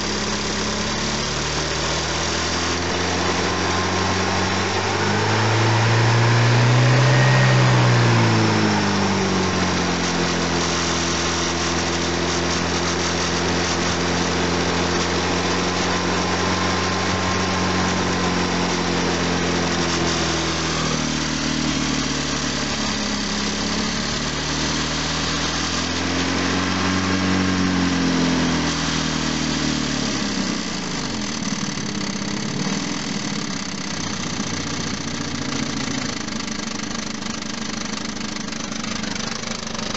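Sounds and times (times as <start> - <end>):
petrol engine idling with knock: 0.0 - 39.9.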